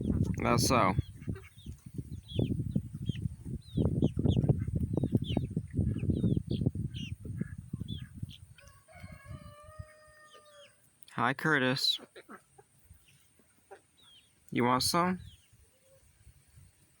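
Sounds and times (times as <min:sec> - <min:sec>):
chicken drawn-out call: 0:05.8 - 0:10.8.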